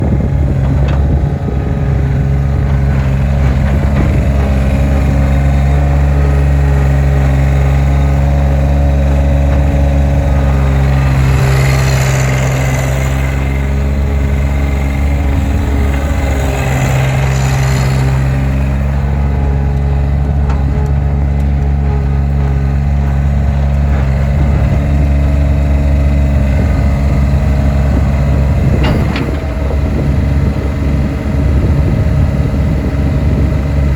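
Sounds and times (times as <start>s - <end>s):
skid steer engine running: 0.0s - 33.9s.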